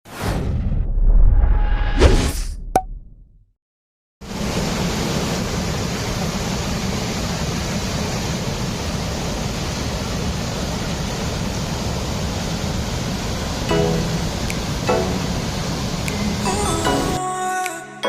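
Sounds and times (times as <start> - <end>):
waterfall rushing: 4.3 - 17.8.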